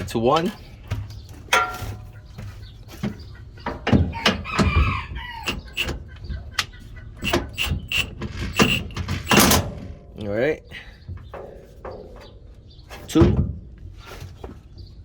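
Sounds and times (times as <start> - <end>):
sharp clicks and knocks: 3.0 - 9.9
rooster crowing: 4.1 - 5.9.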